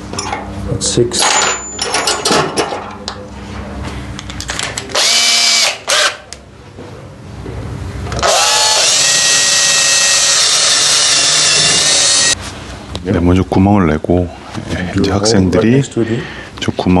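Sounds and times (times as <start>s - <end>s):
electric drill motor whine: 5.0s - 6.2s, 8.2s - 12.4s.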